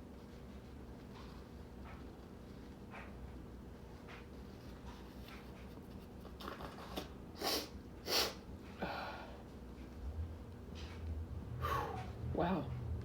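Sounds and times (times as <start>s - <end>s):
man breathing faintly: 11.5s - 12.3s.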